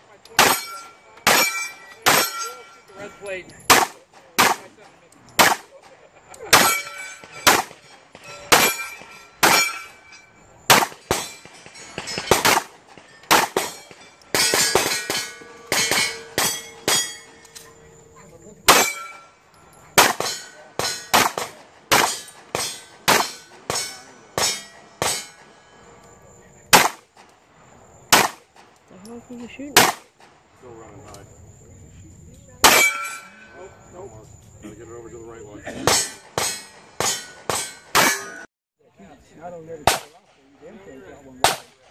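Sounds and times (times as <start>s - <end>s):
steel target plate clanging: 0.3s - 4.8s, 6.5s - 18.0s, 18.6s - 25.9s, 32.6s - 33.6s, 35.7s - 38.5s
gunshots: 0.4s - 2.6s, 3.7s - 4.8s, 5.4s - 5.8s, 6.5s - 9.9s, 10.7s - 17.2s, 18.7s - 19.2s, 20.0s - 25.5s, 26.7s - 27.2s, 28.1s - 28.6s, 29.8s - 30.1s, 39.8s - 40.2s, 41.4s - 41.9s.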